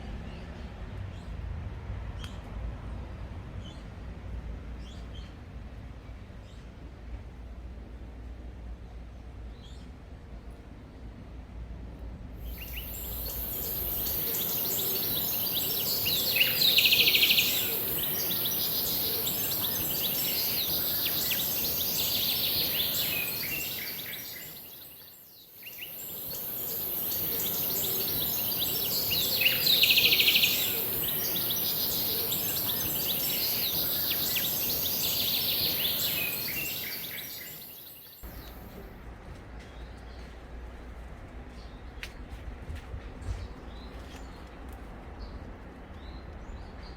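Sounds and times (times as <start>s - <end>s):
birds chirping and calling: 12.4s - 25.0s, 25.7s - 38.6s
steady high hiss: 12.4s - 38.8s.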